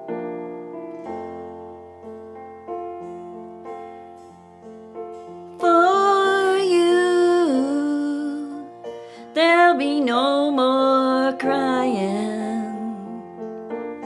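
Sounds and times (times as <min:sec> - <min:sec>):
gentle piano chords: 0:00.0 - 0:14.0
woman singing slow notes: 0:05.6 - 0:13.4.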